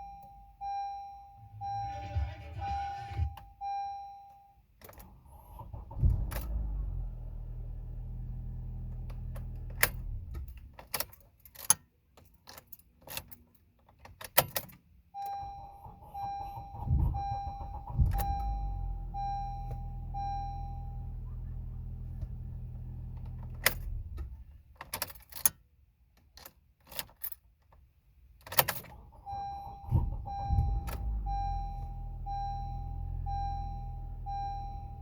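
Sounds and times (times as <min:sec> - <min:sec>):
car engine starting and idling: 0:00.0 - 0:04.0, 0:04.8 - 0:11.2, 0:15.1 - 0:25.4, 0:27.8 - 0:35.0
car chime beeping: 0:00.0 - 0:07.6, 0:15.2 - 0:23.9, 0:28.9 - 0:35.0.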